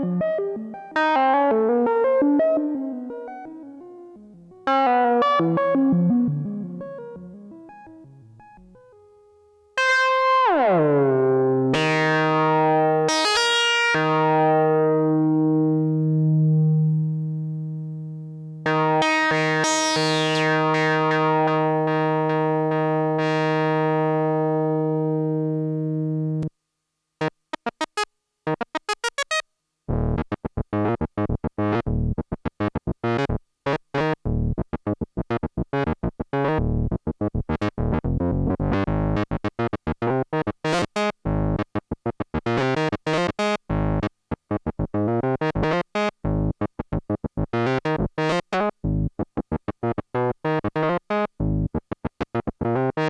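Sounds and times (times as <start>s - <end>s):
analog synthesizer notes: 0.0s - 9.1s, 18.6s - 26.5s, 27.5s - 53.0s.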